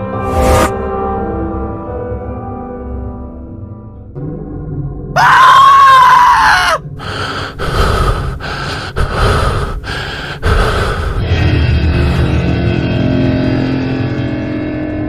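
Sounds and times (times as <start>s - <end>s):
woman screaming: 5.2s - 6.8s
ragged gasping breaths: 7.0s - 12.4s.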